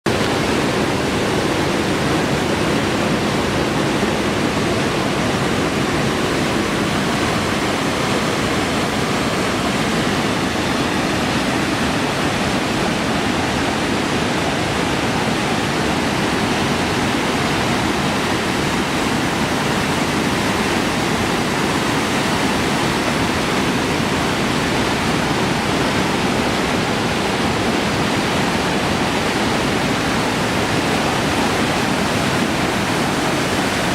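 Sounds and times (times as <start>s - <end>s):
waterfall roaring: 0.1s - 33.9s.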